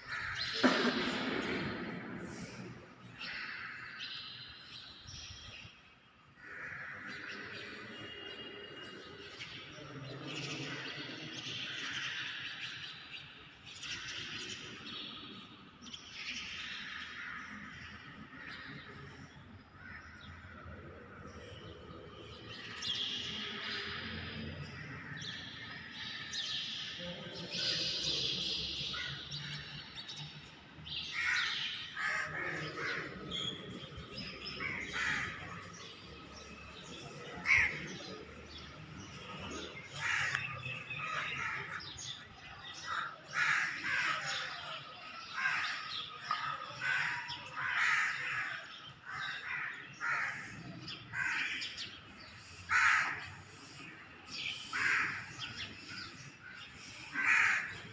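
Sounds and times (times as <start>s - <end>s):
birds calling harshly: 28.8s - 57.9s.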